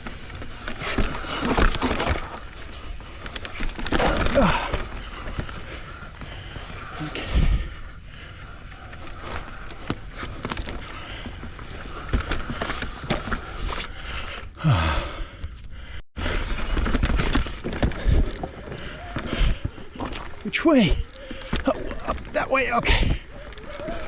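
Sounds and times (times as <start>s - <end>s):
bike rattling clicks and knocks: 0.0s - 14.5s, 16.2s - 24.0s
bike tyre noise on rough trail: 0.0s - 24.0s.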